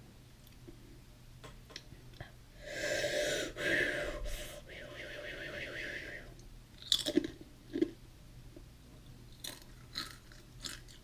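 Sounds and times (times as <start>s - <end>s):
person chewing cookies: 6.8s - 8.0s, 9.3s - 11.0s.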